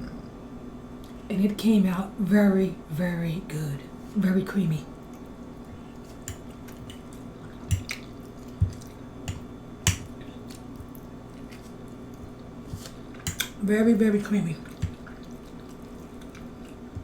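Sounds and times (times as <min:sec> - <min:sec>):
wet chewing mouth sounds: 0:05.0 - 0:13.6, 0:14.6 - 0:17.0.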